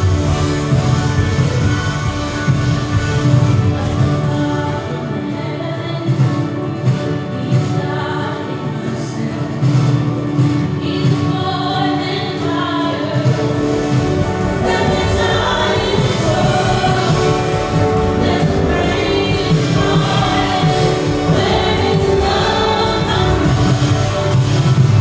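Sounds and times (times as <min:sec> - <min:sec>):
group vocals singing: 0:00.0 - 0:25.0
worship band playing: 0:00.0 - 0:25.0.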